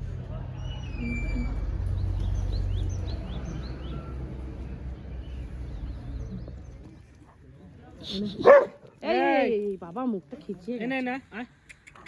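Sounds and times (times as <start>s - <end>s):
low outdoor rumble: 0.0s - 7.3s.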